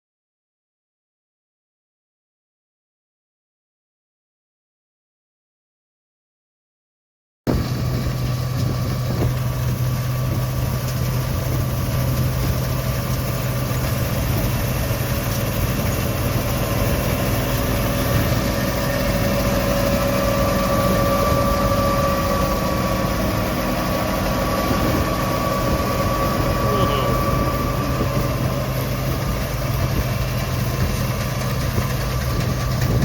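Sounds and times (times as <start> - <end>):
high-pitched whine: 7.5 - 33.0
machinery engine deep hum: 7.5 - 33.0.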